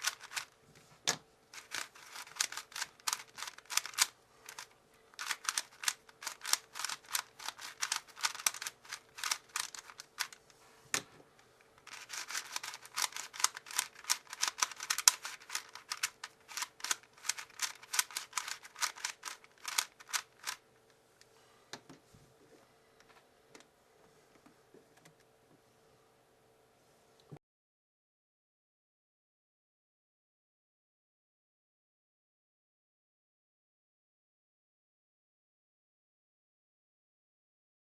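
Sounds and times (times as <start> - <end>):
plastic puzzle cube clicking: 0.0 - 0.5, 1.6 - 10.4, 11.8 - 20.6.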